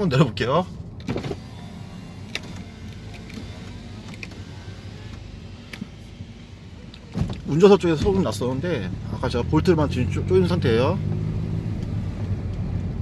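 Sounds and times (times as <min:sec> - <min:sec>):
tyres rumbling on unpaved road: 0:00.0 - 0:13.0.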